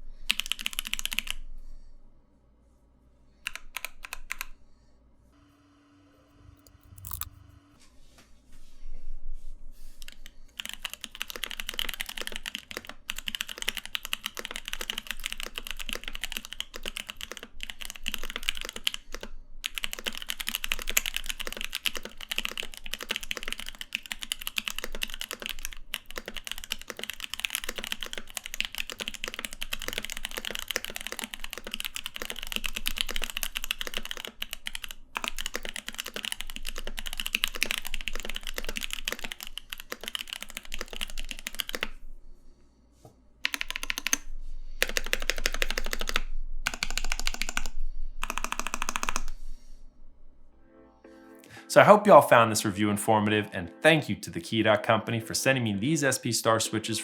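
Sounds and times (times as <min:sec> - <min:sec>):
mechanical keyboard typing: 0:00.3 - 0:01.4, 0:03.4 - 0:04.5, 0:06.6 - 0:07.4, 0:10.0 - 0:41.9, 0:43.4 - 0:49.4.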